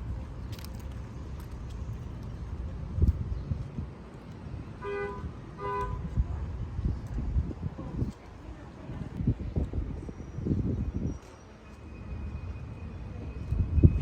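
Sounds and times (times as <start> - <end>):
car horn beeps: 4.8 - 6.2.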